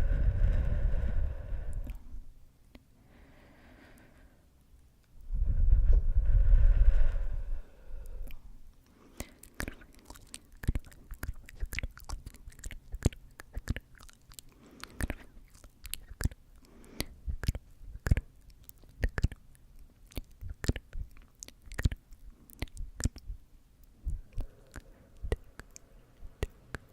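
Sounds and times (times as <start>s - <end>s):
soft breathing: 0.0s - 4.6s, 5.2s - 18.9s, 23.9s - 26.9s
wet tongue and lip clicks: 1.7s - 2.0s, 8.0s - 26.9s.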